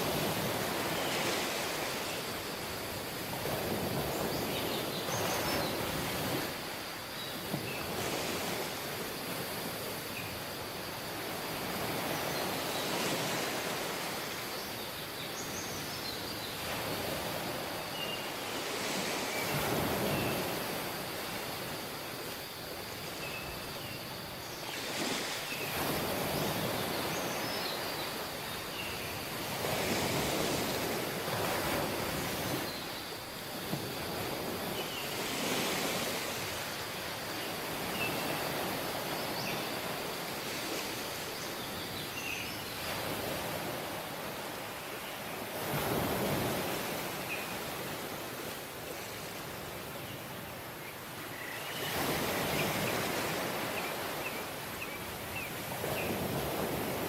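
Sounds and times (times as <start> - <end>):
sea waves breaking on beach: 0.0 - 57.0.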